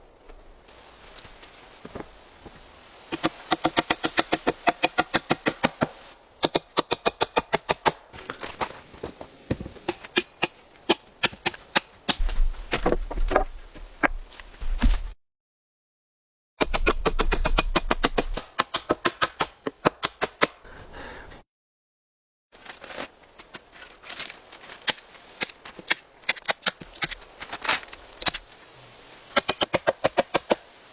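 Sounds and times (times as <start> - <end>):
rapid chopping strikes: 3.1 - 8.0, 16.6 - 20.6, 29.4 - 30.6.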